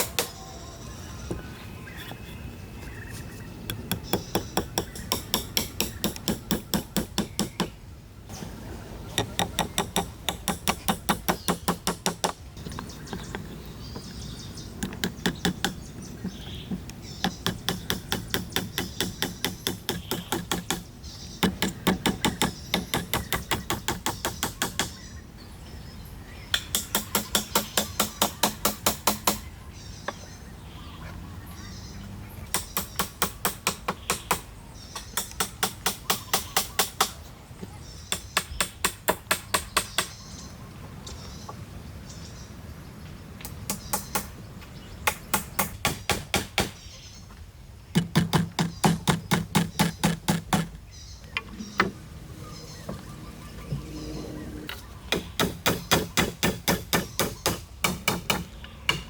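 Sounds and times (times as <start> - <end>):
hand tool striking wood: 3.7 - 7.8, 48.0 - 50.8, 55.1 - 59.0.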